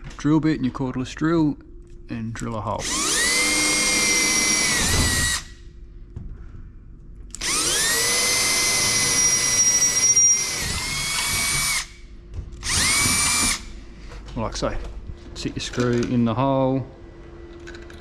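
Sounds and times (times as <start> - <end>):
cordless drill whining: 2.8 - 5.6, 7.4 - 12.0, 12.6 - 13.7.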